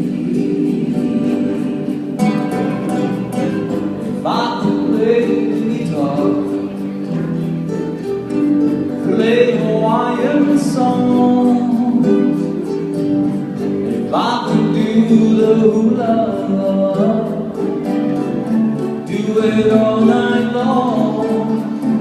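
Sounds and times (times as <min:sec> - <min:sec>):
voices singing: 0:00.0 - 0:07.1
strummed guitars: 0:00.0 - 0:22.0.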